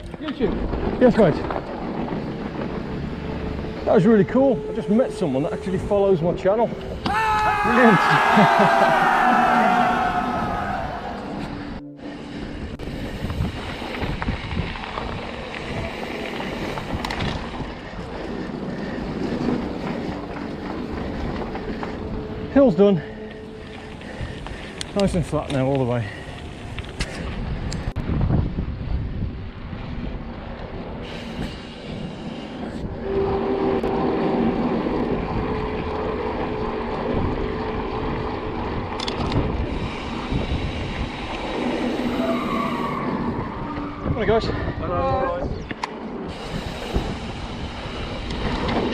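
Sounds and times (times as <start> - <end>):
mountain bike rumbling: 0.4 - 3.9
wind buffeting microphone: 12.4 - 22.5, 23.1 - 48.9.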